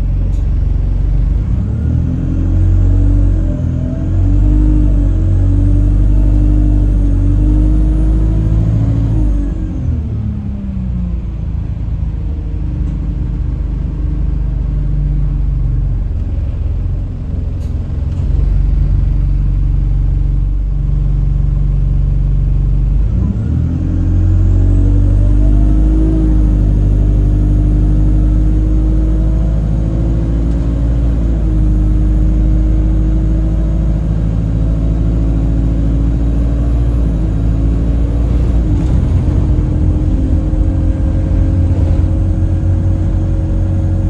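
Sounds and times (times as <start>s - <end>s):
drivetrain rumble: 11.2s - 23.2s, 26.2s - 44.0s.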